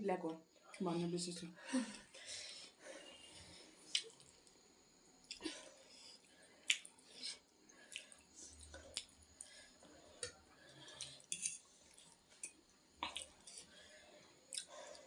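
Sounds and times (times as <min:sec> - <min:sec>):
chewing noodles: 0:06.1 - 0:13.8, 0:14.4 - 0:15.0
wet mouth clicks: 0:06.6 - 0:06.9, 0:07.8 - 0:09.1, 0:14.5 - 0:14.8.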